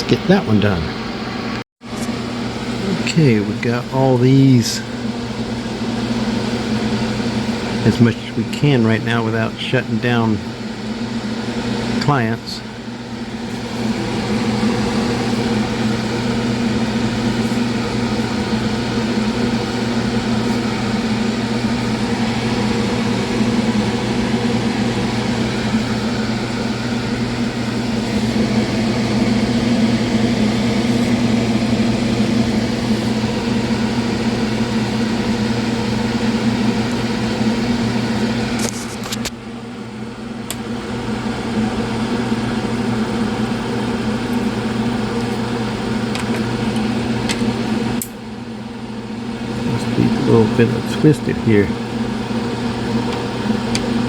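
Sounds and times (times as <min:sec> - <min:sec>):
fan humming: 0:00.0 - 0:54.0.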